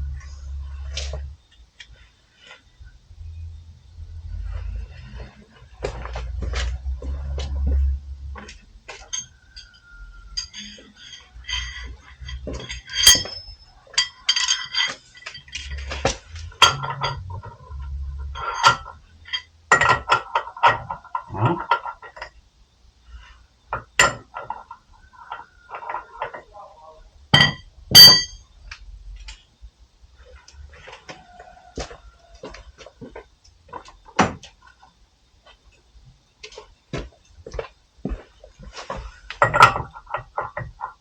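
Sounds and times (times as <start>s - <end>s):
dull low bumps: 0.0s - 1.5s
metal tools clinking: 5.2s - 22.4s, 27.4s - 28.4s.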